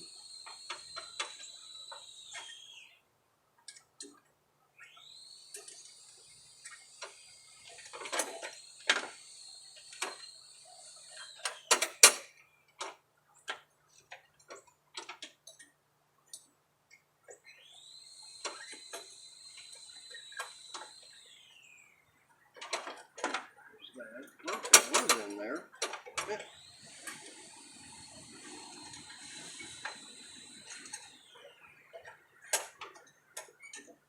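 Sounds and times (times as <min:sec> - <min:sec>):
high-pitched insect call: 0:00.0 - 0:03.0, 0:04.8 - 0:12.1, 0:17.5 - 0:21.8, 0:26.4 - 0:31.8
tools clanking on metal: 0:24.5 - 0:25.4.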